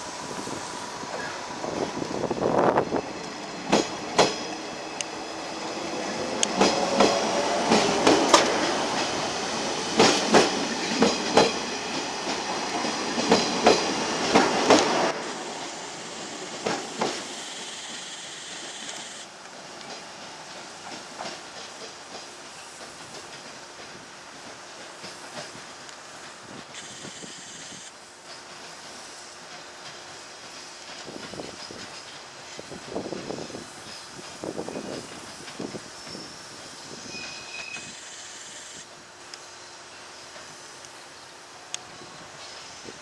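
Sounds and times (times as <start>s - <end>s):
train wheels knocking over rail joints: 0.0s - 15.2s, 16.4s - 18.0s
electric train whine: 0.0s - 43.0s
hiss with high tone: 0.0s - 43.0s.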